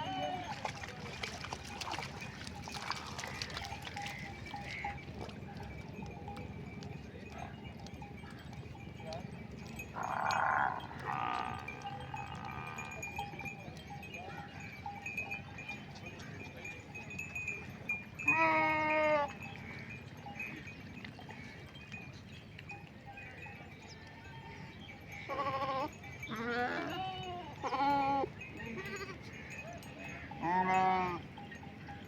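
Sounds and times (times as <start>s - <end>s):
goats and sheep bleating: 0.0s - 1.0s, 9.9s - 13.2s, 18.2s - 19.4s, 25.2s - 31.3s.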